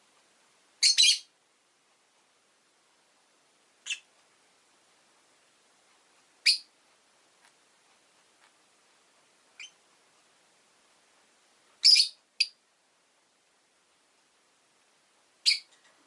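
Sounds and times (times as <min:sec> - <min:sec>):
lovebird chirping: 0:00.8 - 0:01.3, 0:03.8 - 0:04.1, 0:06.4 - 0:06.7, 0:09.5 - 0:09.8, 0:11.8 - 0:12.6, 0:15.4 - 0:15.8.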